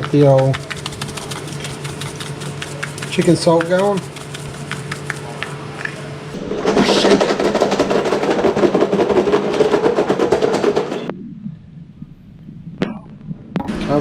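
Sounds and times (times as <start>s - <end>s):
salt shaker rattling: 0.0s - 6.4s.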